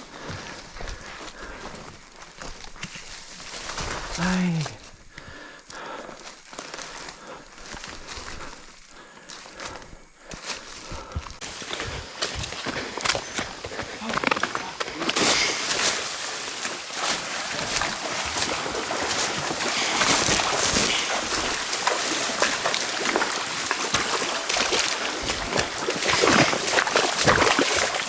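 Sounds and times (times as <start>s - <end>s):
footsteps wading in water: 11.4s - 28.0s
water sloshing and splashing: 11.4s - 28.0s.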